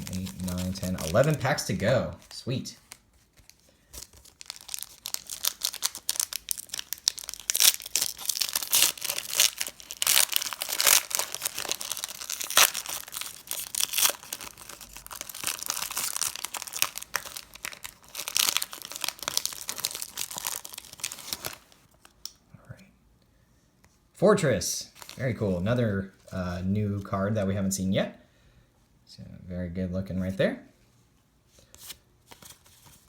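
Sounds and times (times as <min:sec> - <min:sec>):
foil wrapper crinkling and tearing: 0:00.0 - 0:21.9.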